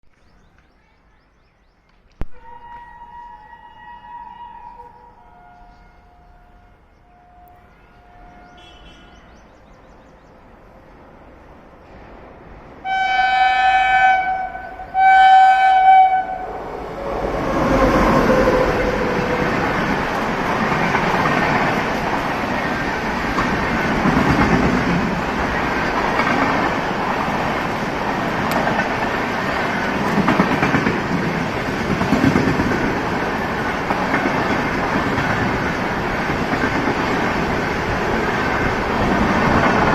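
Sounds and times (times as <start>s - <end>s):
train wheels rumbling: 2.2s - 39.9s
train horn blasts: 2.3s - 9.3s, 12.8s - 19.5s
clickety-clack over rail joints: 17.8s - 39.9s.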